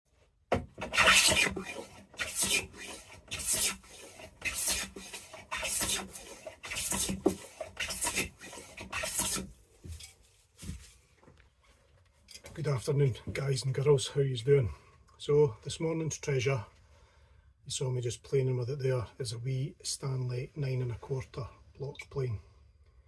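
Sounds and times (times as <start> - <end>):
block plane scraping wood: 0.8 - 9.5.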